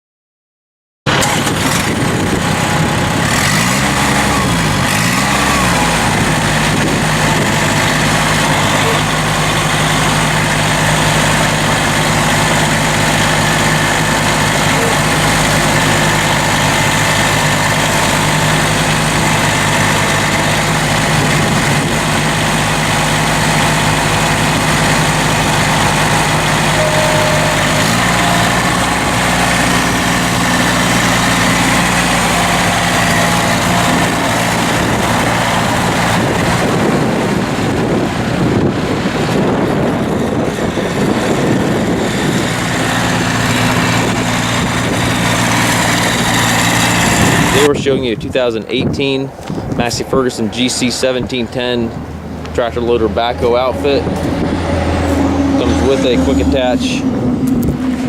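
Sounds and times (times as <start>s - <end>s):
diesel engine idling: 1.1s - 58.0s.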